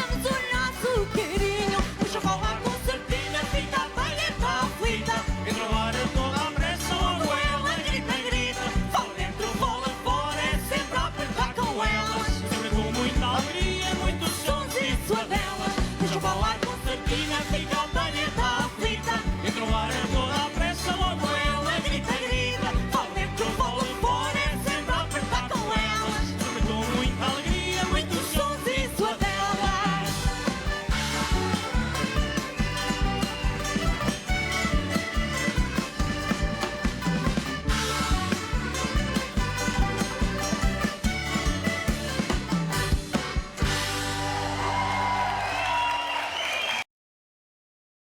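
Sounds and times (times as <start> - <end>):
concertinas playing a tune: 0.0 - 45.1
steady beat: 29.2 - 44.6.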